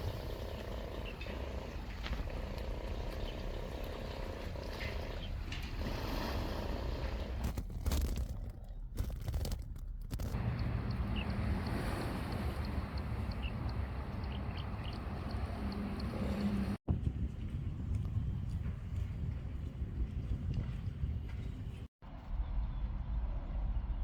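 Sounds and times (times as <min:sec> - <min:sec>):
sea surf: 0:00.0 - 0:07.4, 0:10.4 - 0:16.8
wind: 0:00.0 - 0:24.0.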